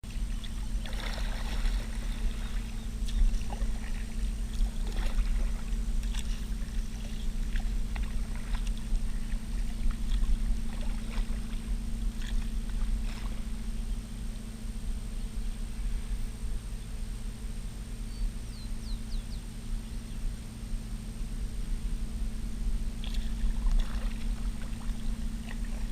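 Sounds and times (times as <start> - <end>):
steady low hum: 0.0 - 25.9
paddle splashes and drips: 0.1 - 13.6, 23.0 - 25.9.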